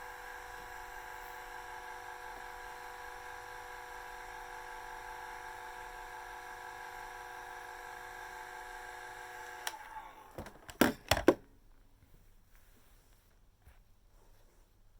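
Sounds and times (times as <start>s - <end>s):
hair dryer whining hum: 0.0s - 11.4s.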